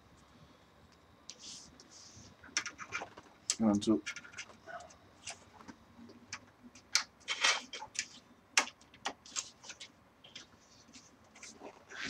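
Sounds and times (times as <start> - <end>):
computer parts clicking and tapping: 2.5 - 10.5.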